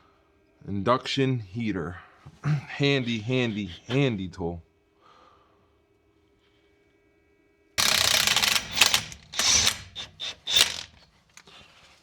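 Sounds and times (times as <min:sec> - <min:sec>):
metal clatter: 0:07.8 - 0:11.5
ratchet wrench clicking: 0:07.8 - 0:11.5.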